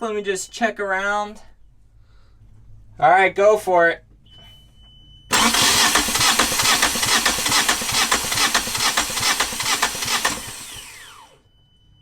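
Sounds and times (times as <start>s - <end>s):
diesel engine cranking on starter: 5.3s - 11.4s.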